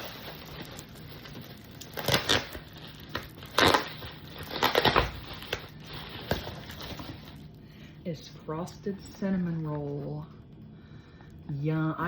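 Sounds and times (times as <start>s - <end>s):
packaging rustling and crinkling: 0.0s - 7.6s.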